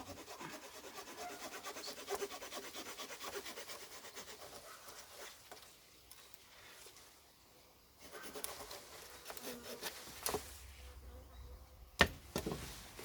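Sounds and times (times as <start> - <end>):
saw rasping into wooden stick: 0.0 - 4.7.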